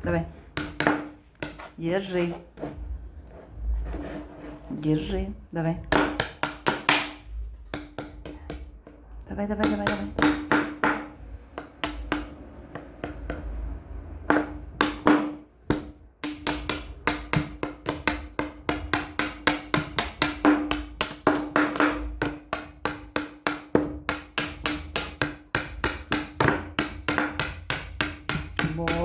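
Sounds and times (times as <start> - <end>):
small hammer knocking: 0.6 - 1.6, 5.8 - 9.0, 9.6 - 13.6, 14.2 - 29.0.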